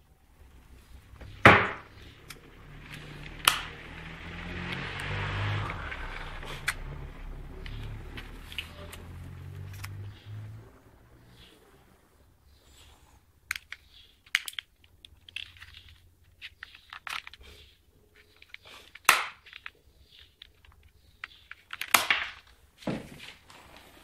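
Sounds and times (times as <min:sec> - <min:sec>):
rustling: 0:00.0 - 0:24.0
handling clicks and knocks: 0:13.5 - 0:23.4.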